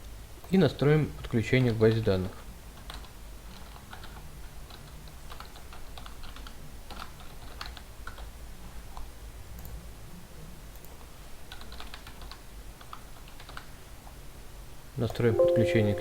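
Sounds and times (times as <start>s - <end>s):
typing on computer keyboard: 2.8s - 8.3s, 10.8s - 13.7s.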